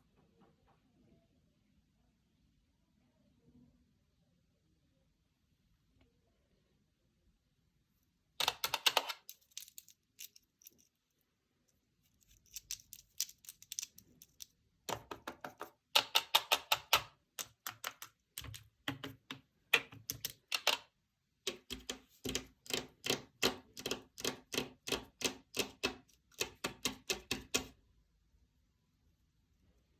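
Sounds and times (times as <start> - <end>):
crisp paper clicks and taps: 12.4 - 27.8.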